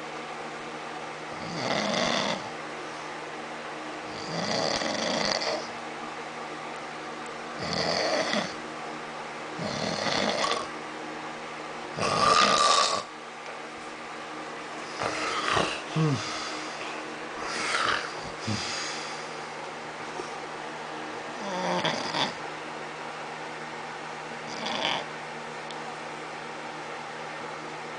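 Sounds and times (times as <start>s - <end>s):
steady low hum: 0.0s - 27.9s
man snoring: 1.4s - 2.5s, 4.1s - 5.7s, 7.6s - 8.6s, 9.6s - 10.7s, 12.0s - 13.1s, 15.0s - 16.6s, 17.4s - 19.2s, 21.4s - 22.4s, 24.5s - 25.1s.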